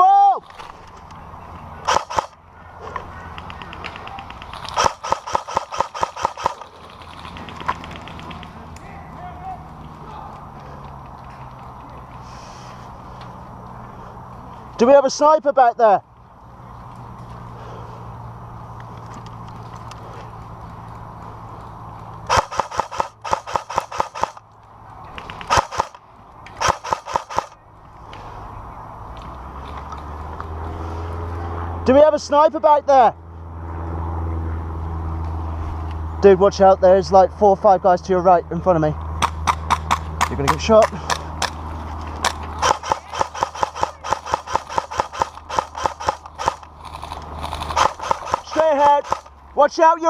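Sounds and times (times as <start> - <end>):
airsoft gun shots: 1.8 - 2.4, 4.7 - 6.7, 22.3 - 24.4, 25.4 - 26.0, 26.6 - 27.6, 42.6 - 46.6, 47.6 - 49.3.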